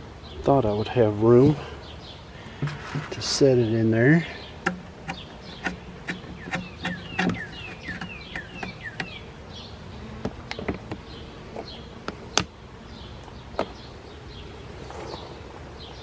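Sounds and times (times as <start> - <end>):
honeybees buzzing: 0.0 - 16.0
bird calling falling notes: 2.4 - 11.9
clicks and knocks: 2.6 - 3.2.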